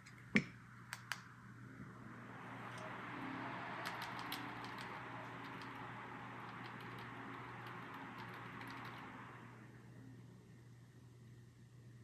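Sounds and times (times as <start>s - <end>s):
computer fans whooshing: 1.8s - 10.0s.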